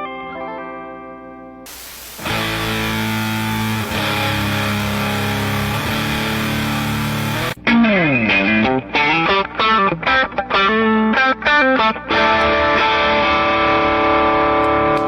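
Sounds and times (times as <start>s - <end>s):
hiss: 1.7s - 7.6s
distorted electric guitar: 1.7s - 15.0s.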